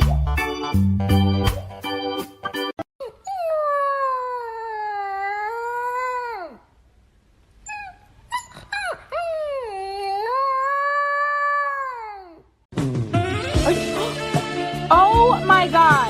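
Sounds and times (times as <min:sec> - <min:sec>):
music: 0:00.0 - 0:02.8, 0:12.7 - 0:16.0.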